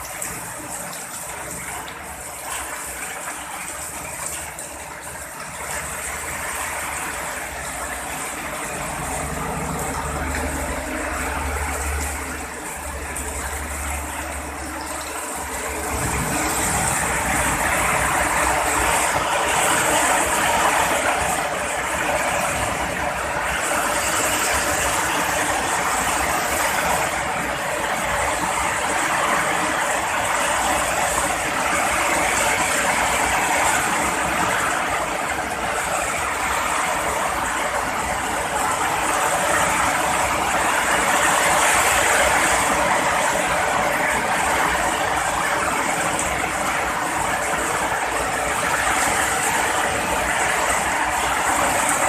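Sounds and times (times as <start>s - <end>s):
heavy rain falling: 0.0s - 52.0s.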